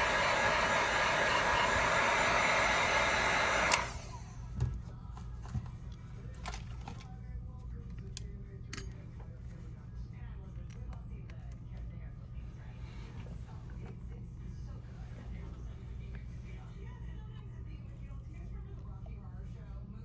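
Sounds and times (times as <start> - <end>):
hot-air gun blowing: 0.0 - 4.4.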